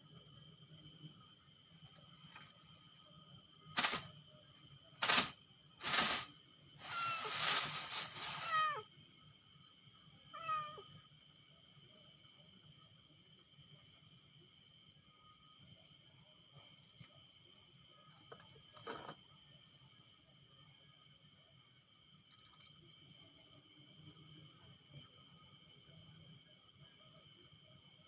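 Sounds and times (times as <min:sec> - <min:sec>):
insect chirring: 0:05.0 - 0:08.9
cat meowing: 0:06.8 - 0:07.4, 0:08.3 - 0:08.8, 0:10.3 - 0:10.8.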